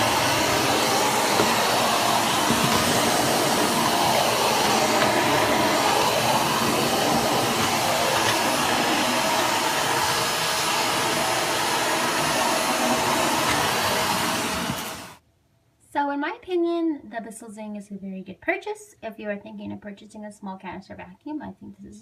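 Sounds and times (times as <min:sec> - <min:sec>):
vacuum cleaner running: 0:00.0 - 0:15.2.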